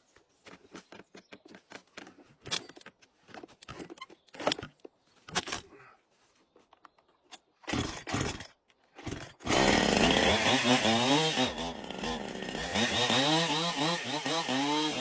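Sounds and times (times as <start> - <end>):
clicks and scrapes of handling gear: 0.0 - 9.4
chainsaw pull-start: 7.6 - 15.0.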